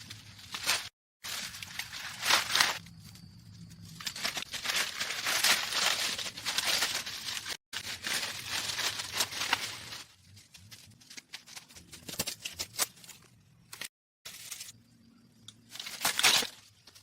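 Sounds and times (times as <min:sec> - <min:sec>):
crinkling crumpling rustle: 0:00.0 - 0:13.2.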